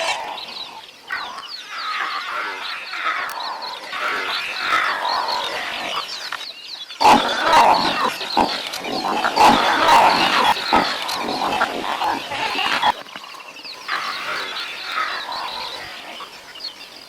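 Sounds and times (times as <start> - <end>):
lions grunting and calling: 0.0 - 6.4, 7.0 - 16.6.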